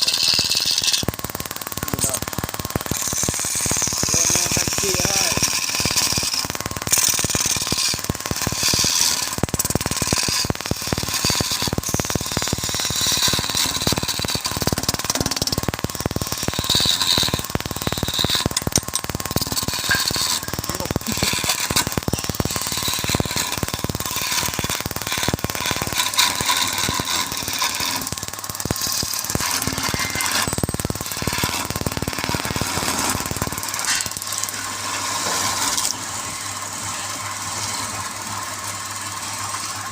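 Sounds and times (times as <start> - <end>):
lathe tool chattering on wood: 0.0 - 36.0.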